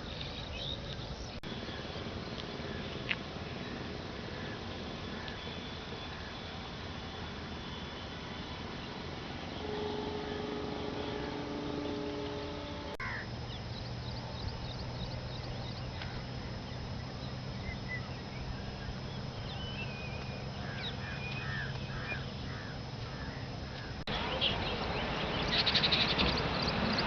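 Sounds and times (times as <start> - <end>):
droning held tones: 0.0 - 25.3
steady low hum: 0.0 - 27.0
birds chirping and calling: 10.3 - 27.0.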